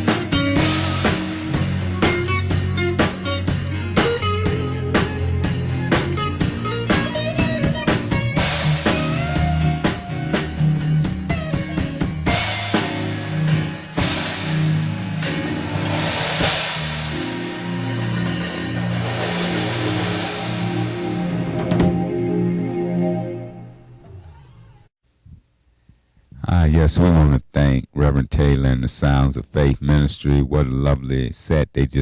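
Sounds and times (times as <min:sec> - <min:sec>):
live gospel band: 0:00.0 - 0:23.5.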